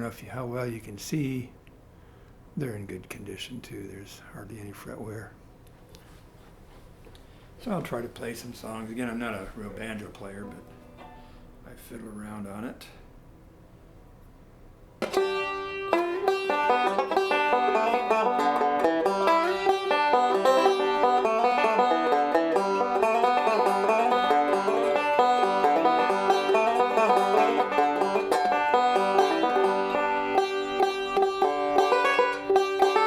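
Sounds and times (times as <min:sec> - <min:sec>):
banjo picking: 0:07.6 - 0:11.4, 0:15.0 - 0:33.0.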